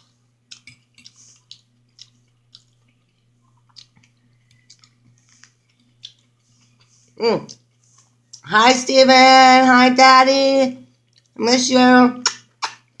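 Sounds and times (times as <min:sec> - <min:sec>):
wet chewing and mouth smacks: 0:00.0 - 0:08.5, 0:10.9 - 0:11.4
faint steady hum: 0:00.0 - 0:13.0.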